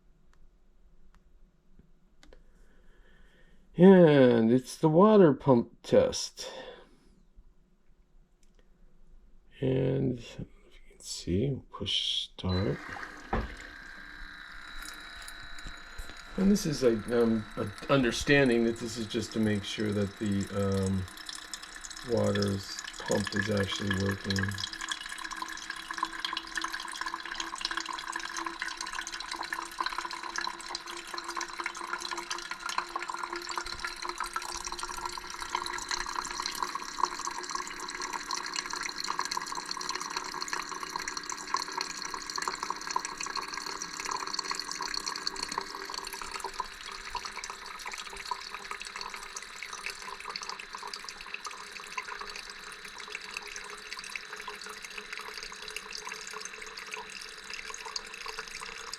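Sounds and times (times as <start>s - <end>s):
pump humming: 12.4s - 58.9s
water splashing into carafe: 12.6s - 14.0s, 14.8s - 58.9s.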